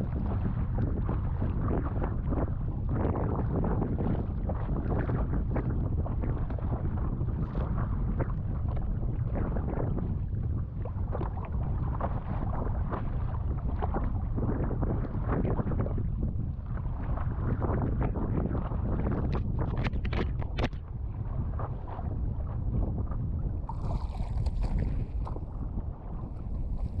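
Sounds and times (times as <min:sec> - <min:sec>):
wind buffeting microphone: 0:00.0 - 0:27.0
water splashing against board: 0:23.7 - 0:25.6.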